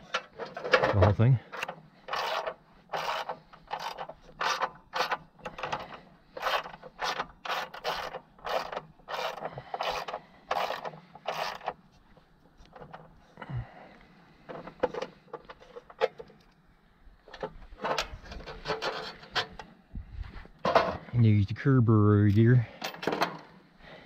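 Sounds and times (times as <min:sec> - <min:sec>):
ratchet wrench pawl rasping: 0:01.6 - 0:05.8, 0:06.4 - 0:11.7.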